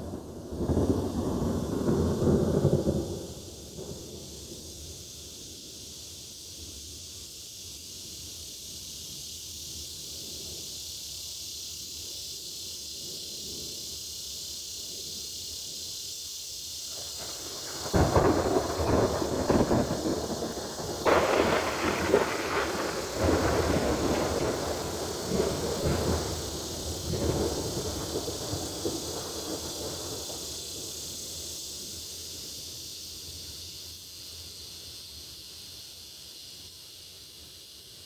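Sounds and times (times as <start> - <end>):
thunder rumbling: 0.0 - 4.4, 17.2 - 31.0
cicadas buzzing: 0.0 - 38.0.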